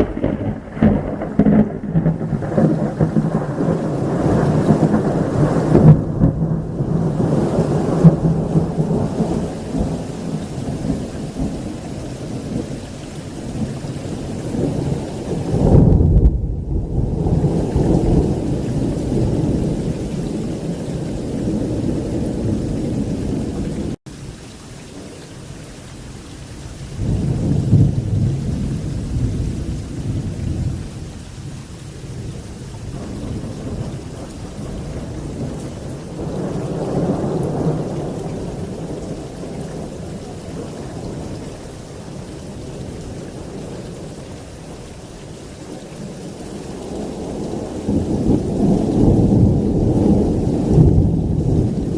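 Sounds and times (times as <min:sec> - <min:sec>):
thunder rolling: 0:00.0 - 0:12.8, 0:13.5 - 0:24.0, 0:47.0 - 0:51.9
heavy rain: 0:00.0 - 0:51.9.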